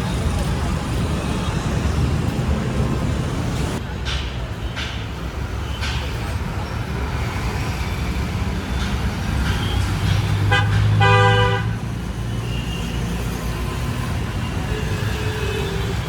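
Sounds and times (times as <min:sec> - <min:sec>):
road traffic engines: 0:00.0 - 0:16.0
vehicle horn beeping: 0:09.6 - 0:11.8.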